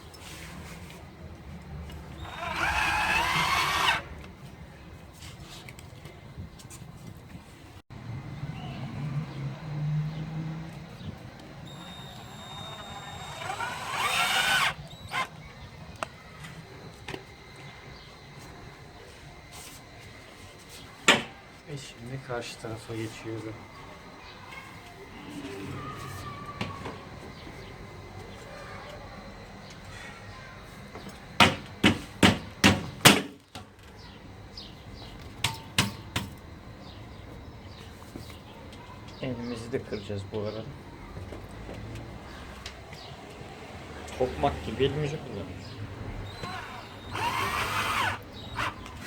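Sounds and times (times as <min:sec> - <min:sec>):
cordless drill motor whining: 0:02.2 - 0:04.1, 0:11.6 - 0:15.4, 0:46.2 - 0:49.0.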